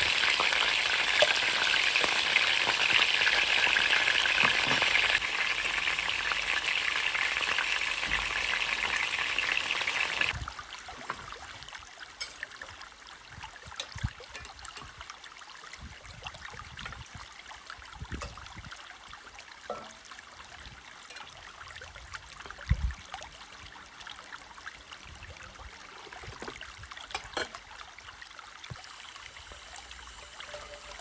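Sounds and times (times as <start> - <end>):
food sizzling in a pan: 0.0 - 10.4, 28.8 - 31.0.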